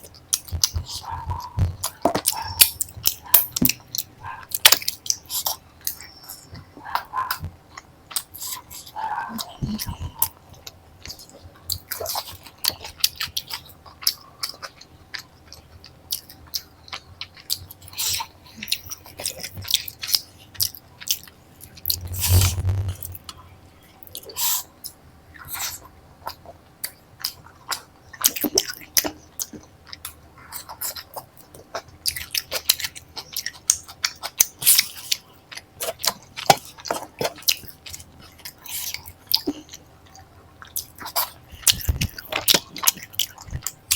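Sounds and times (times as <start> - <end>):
close-miked chewing: 0.0 - 23.3, 24.1 - 43.9.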